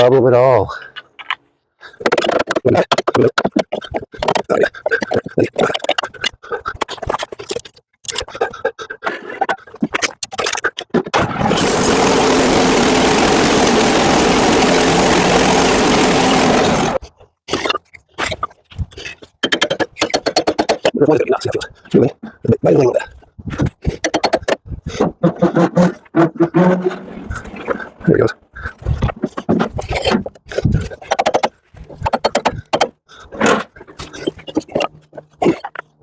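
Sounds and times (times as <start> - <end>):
rapid choppy short sounds: 11.2 - 17.0
sawmill gas engine running: 11.2 - 17.0.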